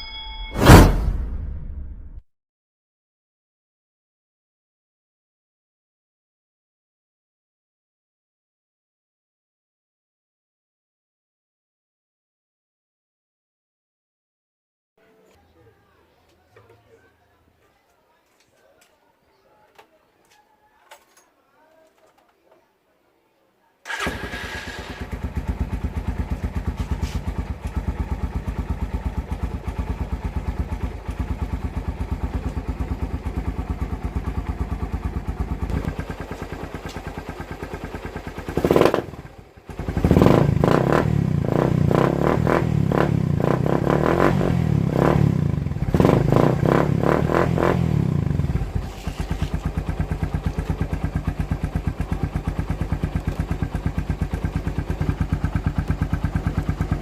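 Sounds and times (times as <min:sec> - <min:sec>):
motorcycle engine idling: 0:23.9 - 0:42.2, 0:44.9 - 0:57.0
motorcycle engine revving: 0:23.9 - 0:57.0.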